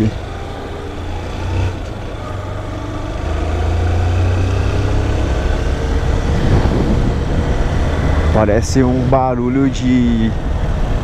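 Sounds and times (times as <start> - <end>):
tyres whining on steel deck: 0.0 - 8.6.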